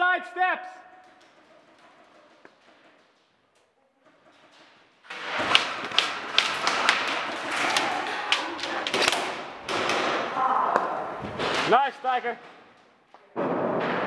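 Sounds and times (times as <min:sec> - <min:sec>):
sharp knocks and cracks: 0:04.5 - 0:14.0.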